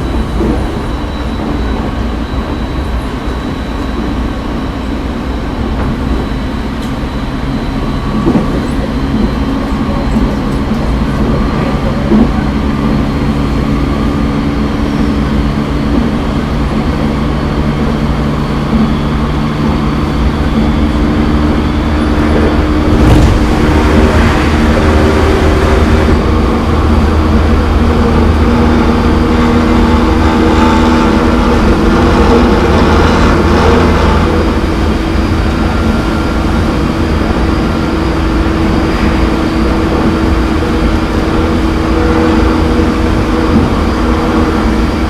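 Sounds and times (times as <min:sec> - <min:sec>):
train motor and gear whine: 0:00.0 - 0:45.0
wheel and track rumble: 0:00.0 - 0:45.0
loud thump: 0:22.9 - 0:24.1.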